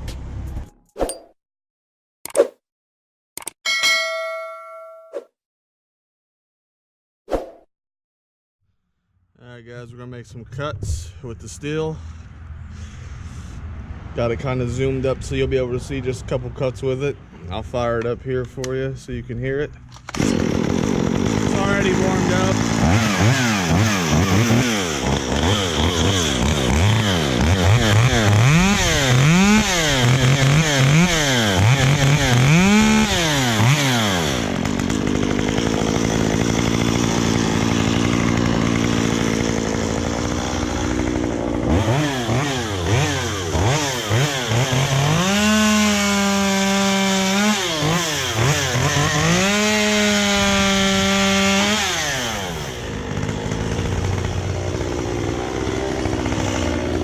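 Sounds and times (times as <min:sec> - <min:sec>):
chainsaw revving and cutting wood: 0:20.0 - 0:57.0.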